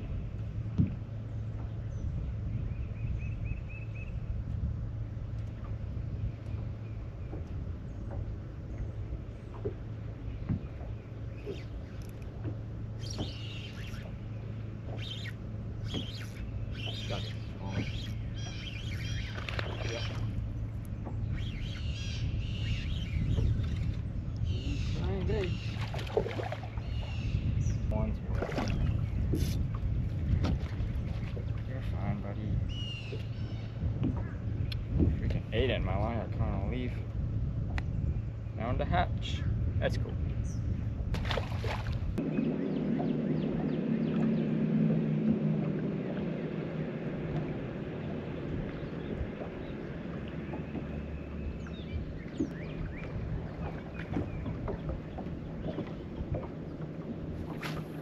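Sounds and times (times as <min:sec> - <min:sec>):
birds chirping: 0:00.0 - 0:41.0, 0:42.1 - 0:58.0
low rumble: 0:00.0 - 0:58.0
steady low hum: 0:00.0 - 0:58.0.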